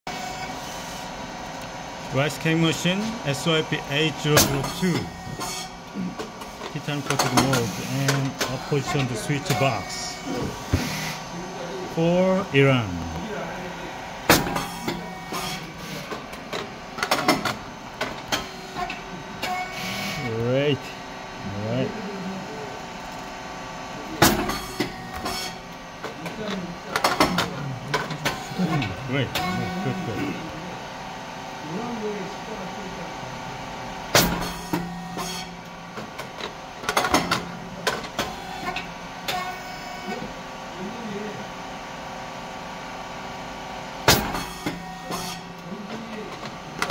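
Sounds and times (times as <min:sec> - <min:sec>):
steady machine hum: 0:00.1 - 0:46.9
machine clacks and knocks: 0:04.3 - 0:09.6, 0:14.3 - 0:19.6, 0:26.1 - 0:28.5, 0:36.0 - 0:39.4, 0:44.1 - 0:45.2.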